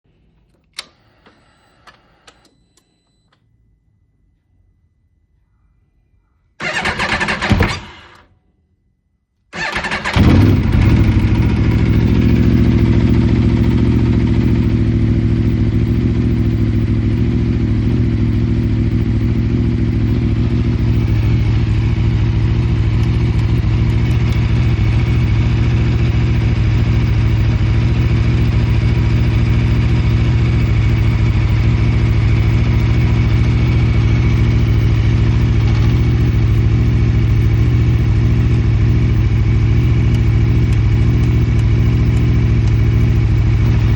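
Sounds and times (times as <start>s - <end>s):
motorcycle engine idling: 9.6s - 43.9s
steady high engine tone: 9.6s - 43.9s.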